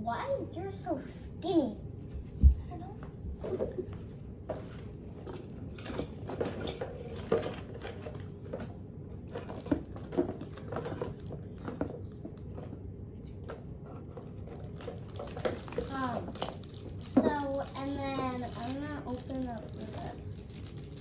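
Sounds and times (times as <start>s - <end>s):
clicks of small hard objects: 14.7s - 21.0s.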